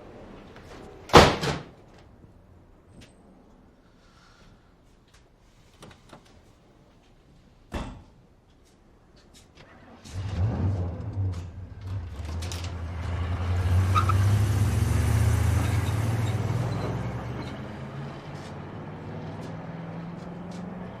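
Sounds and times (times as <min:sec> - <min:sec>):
car engine humming: 0:09.8 - 0:21.0.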